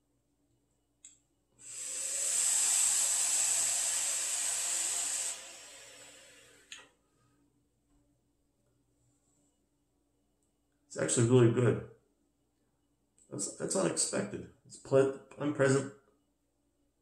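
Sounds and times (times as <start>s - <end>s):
vape draw hissing: 1.6s - 6.8s.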